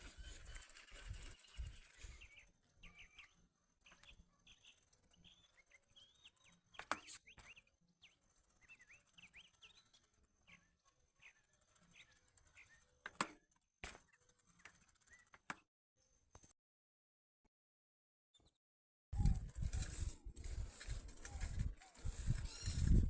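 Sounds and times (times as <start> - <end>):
faint small bird chirps: 0.0 - 15.4, 21.2 - 23.0.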